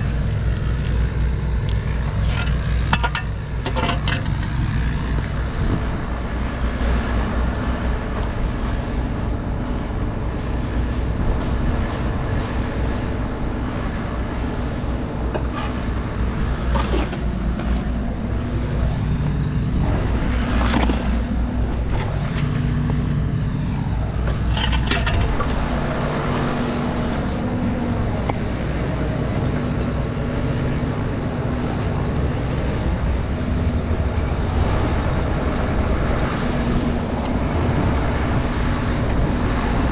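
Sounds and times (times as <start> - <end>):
knocks and clatters: 1.8 - 4.6.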